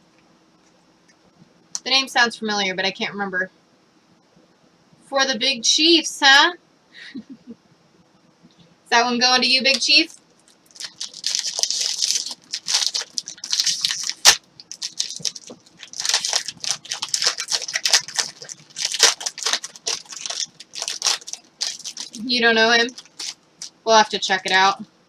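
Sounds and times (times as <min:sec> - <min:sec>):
cards and wrappers rustling: 0:10.1 - 0:23.8.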